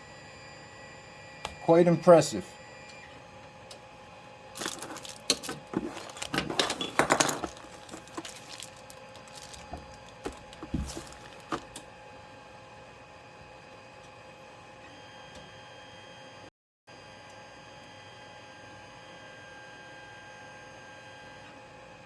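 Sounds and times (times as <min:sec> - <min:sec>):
parts and tools clicking and rattling: 0:04.6 - 0:11.9.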